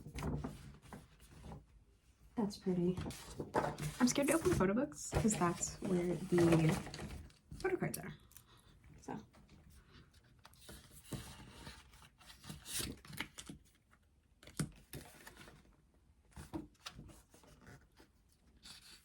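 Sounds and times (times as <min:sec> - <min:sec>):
paper and plastic crinkling: 0:03.0 - 0:07.9.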